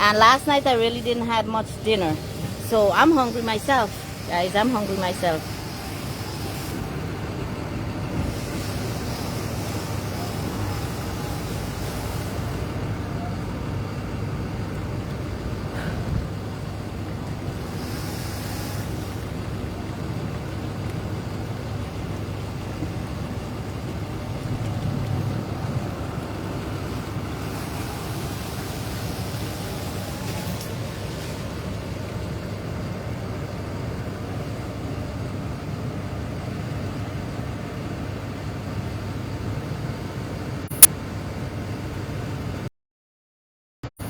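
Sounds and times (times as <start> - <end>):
low outdoor rumble: 0.0 - 42.6
sharp click: 40.7 - 41.0.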